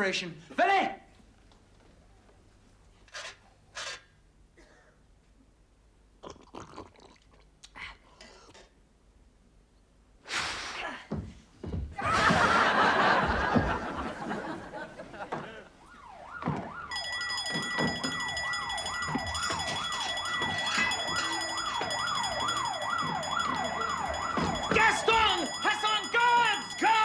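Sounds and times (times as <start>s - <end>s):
wailing alarm siren: 12.2s - 27.0s
steady high tone: 16.0s - 27.0s.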